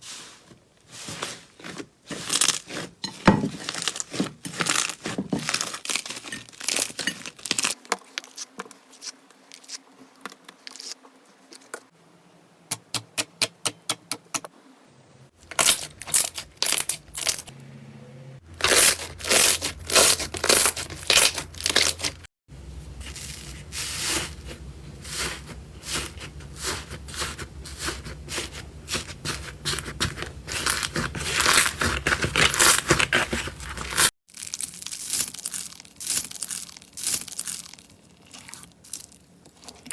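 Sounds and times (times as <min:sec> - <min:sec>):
slime crackling and popping: 0:03.6 - 0:08.4, 0:29.8 - 0:39.7.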